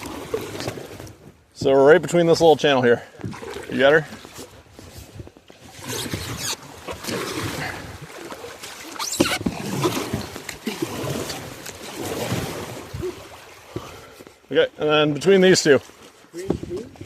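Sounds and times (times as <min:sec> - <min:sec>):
paddles splashing through water: 0:00.0 - 0:17.0
paddle knocks: 0:16.4 - 0:17.0.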